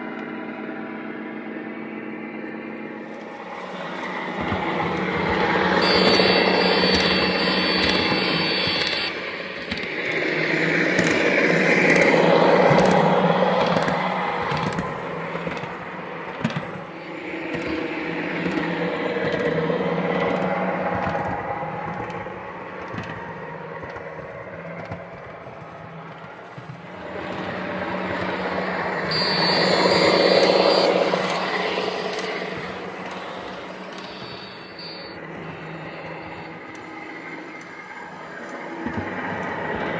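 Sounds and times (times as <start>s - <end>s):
model train running on track: 0.0s - 39.9s
high whine: 1.5s - 9.5s, 26.8s - 36.8s
model train motor hum: 3.1s - 9.9s, 26.8s - 38.6s.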